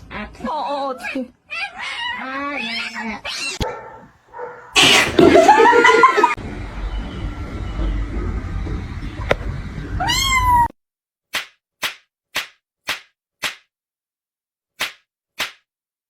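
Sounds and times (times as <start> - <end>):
cat meowing: 1.5 - 3.6, 10.0 - 10.7.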